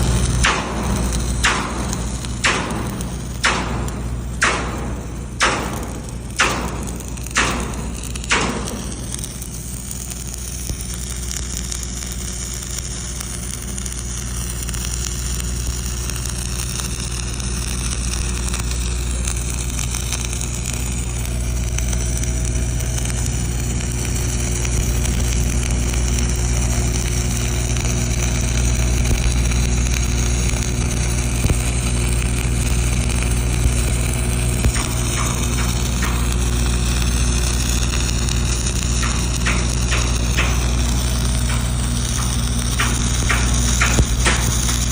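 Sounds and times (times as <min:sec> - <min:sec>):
low hum: 0:00.0 - 0:16.4, 0:17.0 - 0:44.9
welding arc crackling and hissing: 0:00.0 - 0:44.9
sharp knocks: 0:00.4 - 0:09.2, 0:39.0 - 0:44.9.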